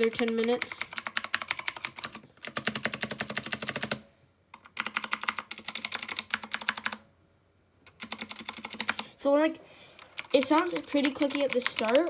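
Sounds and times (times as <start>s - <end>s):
mechanical keyboard typing: 0.0s - 4.0s, 4.6s - 7.0s, 7.9s - 9.0s, 10.2s - 12.0s.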